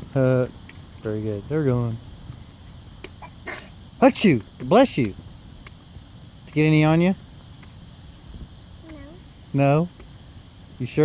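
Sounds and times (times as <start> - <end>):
child sneezing: 3.2 - 3.8.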